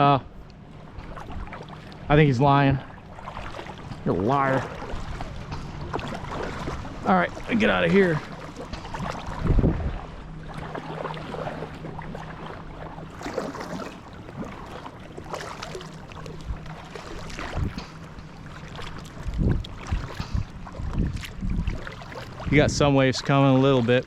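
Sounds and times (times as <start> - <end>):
water splashing around a kayak: 0.0 - 24.0
wind buffeting microphone: 3.8 - 10.3, 12.5 - 24.0.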